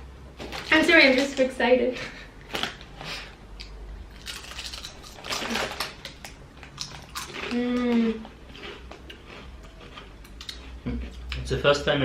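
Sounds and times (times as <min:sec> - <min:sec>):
potato chips crunching: 0:03.6 - 0:11.5.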